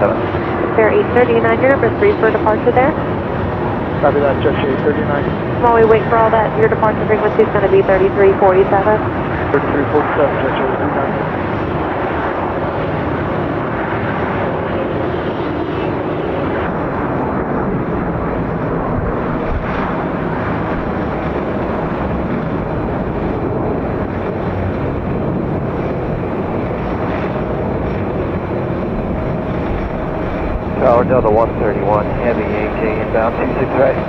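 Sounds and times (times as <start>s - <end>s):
jet engines at takeoff thrust: 0.0s - 34.0s.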